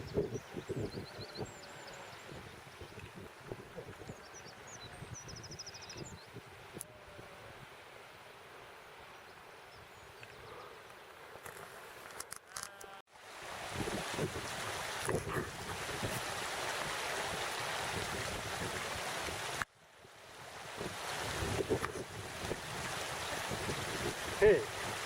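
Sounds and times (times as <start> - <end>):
mountain stream rushing: 13.1 - 25.0.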